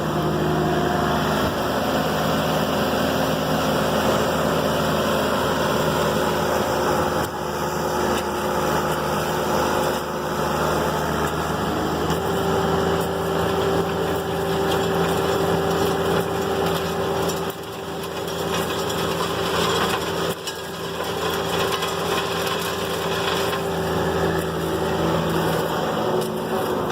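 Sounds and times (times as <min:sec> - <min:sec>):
diesel engine running: 0:00.0 - 0:26.9
soil and stones clattering: 0:11.0 - 0:26.9.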